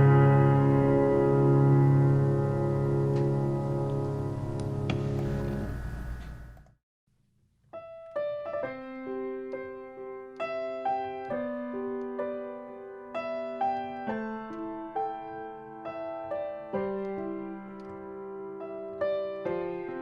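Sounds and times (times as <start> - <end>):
slow gentle piano melody: 0.0 - 6.6, 7.6 - 20.0.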